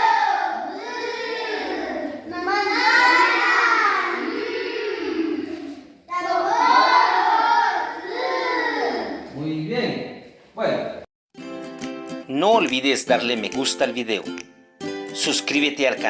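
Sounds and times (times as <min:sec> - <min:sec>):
children chanting in chorus: 0:00.0 - 0:09.3.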